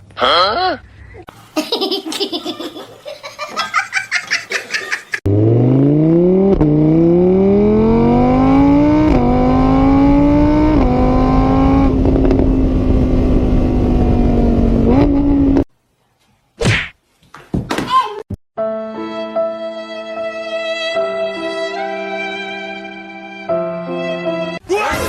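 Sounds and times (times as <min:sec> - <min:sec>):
person laughing: 0:01.5 - 0:05.2
car engine accelerating hard: 0:05.3 - 0:15.7.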